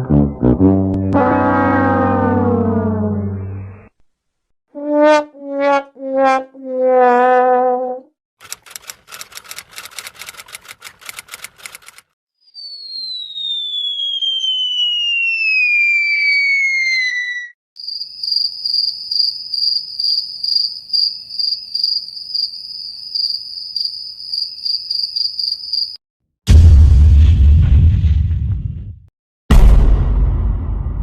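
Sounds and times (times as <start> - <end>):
whistle sliding down in pitch: 12.5 - 17.6
crickets chirping: 17.8 - 26.0
loud boom: 26.5 - 31.0.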